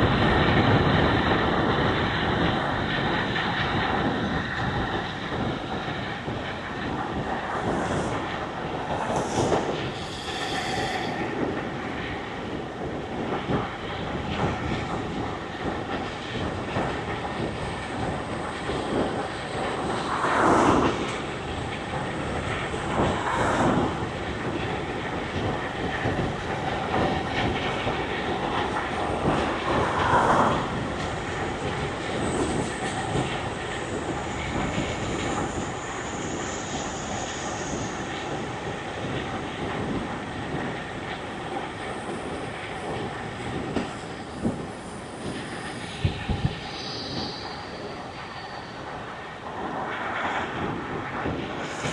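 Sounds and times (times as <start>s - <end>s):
wind rushing: 0.0s - 51.9s
road noise: 19.8s - 22.0s.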